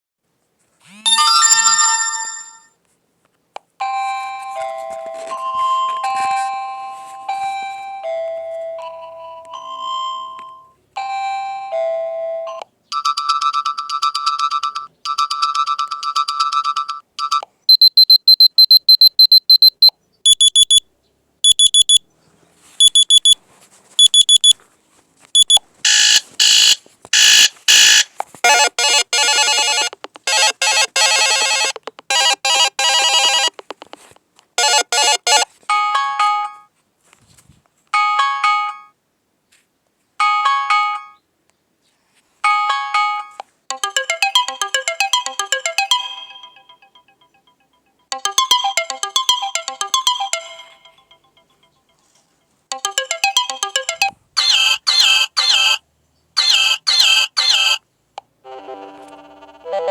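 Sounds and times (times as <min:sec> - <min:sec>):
alarm ringtones from phone speaker: 0:00.9 - 0:02.7, 0:03.8 - 0:14.6, 0:15.2 - 0:20.8, 0:21.5 - 0:22.0, 0:22.8 - 0:23.4, 0:24.0 - 0:24.6, 0:25.4 - 0:33.5, 0:34.6 - 0:36.6, 0:42.5 - 0:51.5, 0:52.7 - 0:55.8, 0:56.4 - 0:57.8, 0:58.5 - 0:59.9.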